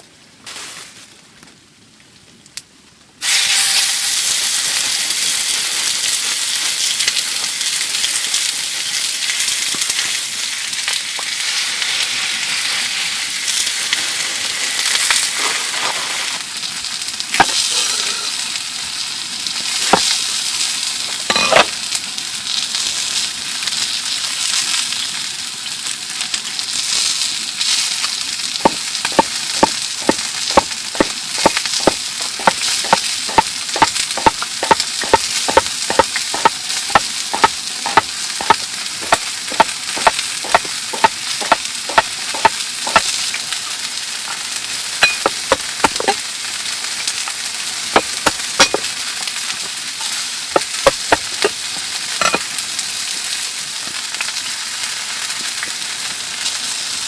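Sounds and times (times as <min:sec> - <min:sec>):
food sizzling: 0:26.7 - 0:57.0
utensil clicking against pan: 0:28.6 - 0:43.1.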